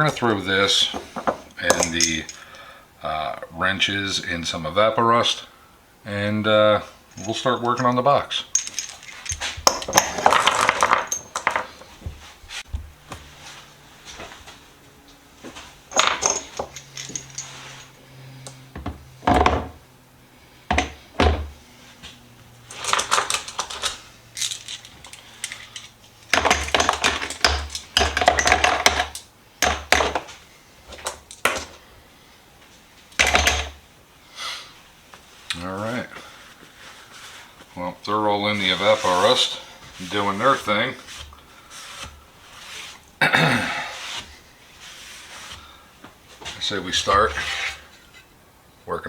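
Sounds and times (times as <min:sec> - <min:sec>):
metal tools clinking and rattling: 0:00.8 - 0:02.5, 0:07.1 - 0:11.9, 0:15.9 - 0:18.6, 0:22.6 - 0:30.3.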